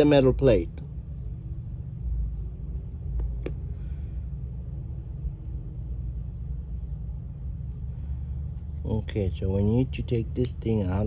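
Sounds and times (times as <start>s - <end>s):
low background rumble: 0.0s - 11.0s
light click: 10.4s - 10.6s.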